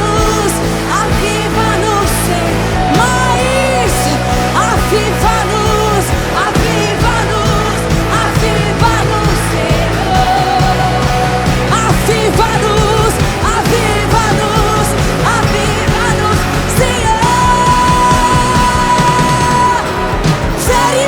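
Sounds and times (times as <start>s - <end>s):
drum beat: 0.0s - 21.0s
live worship band music: 0.0s - 21.0s
person singing long notes: 0.0s - 21.0s.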